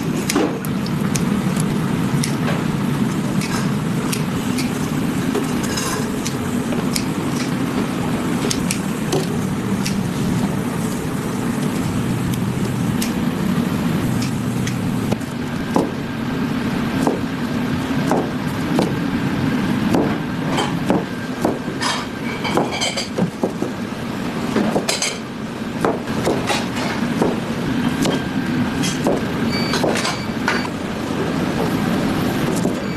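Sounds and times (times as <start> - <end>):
street traffic rumble: 0.0 - 32.9
kitchen utensils and dishes clinking: 21.8 - 23.2.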